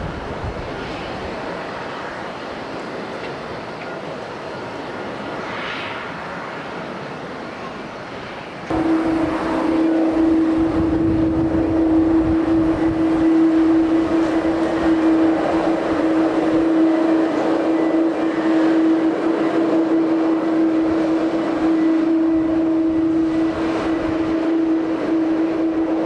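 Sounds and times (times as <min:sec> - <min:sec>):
wind rumbling on microphone: 0:00.0 - 0:02.2, 0:08.3 - 0:26.0
jet engines droning: 0:00.1 - 0:26.0.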